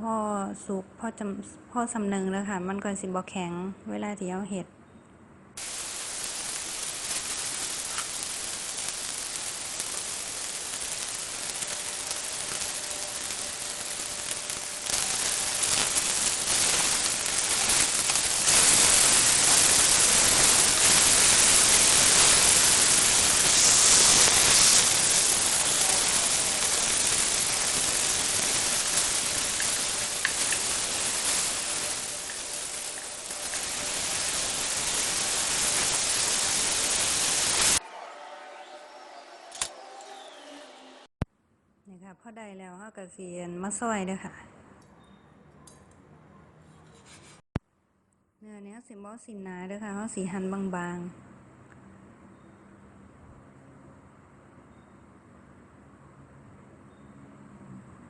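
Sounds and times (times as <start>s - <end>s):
pork sizzling on a grill: 5.6s - 37.8s.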